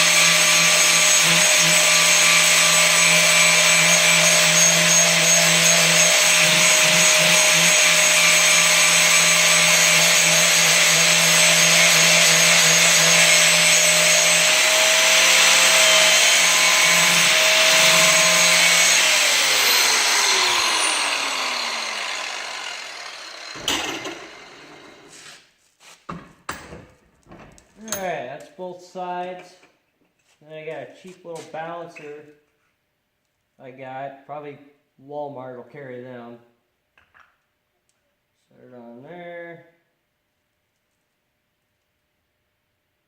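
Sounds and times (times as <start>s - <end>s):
angle grinder grinding steel: 0.0s - 25.4s.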